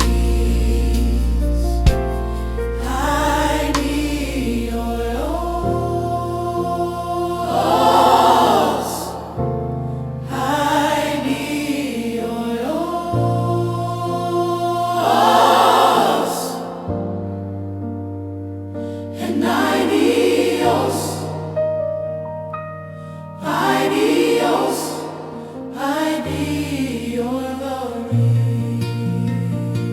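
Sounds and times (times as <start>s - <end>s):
sustained accompaniment chords: 0.0s - 10.4s
gospel choir singing: 0.0s - 17.4s, 18.9s - 21.8s, 23.4s - 29.9s.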